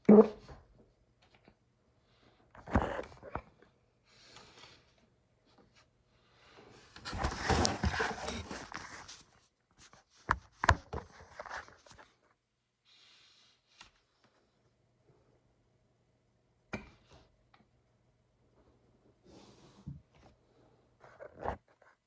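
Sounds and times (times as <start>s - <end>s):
person hiccuping: 0.0s - 0.4s.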